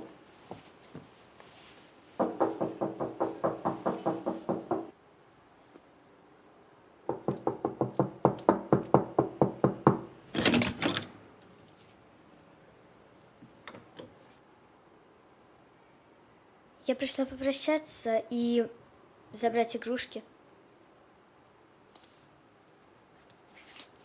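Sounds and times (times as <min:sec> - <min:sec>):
rapid hollow knocking: 0:02.2 - 0:04.9, 0:07.1 - 0:10.2.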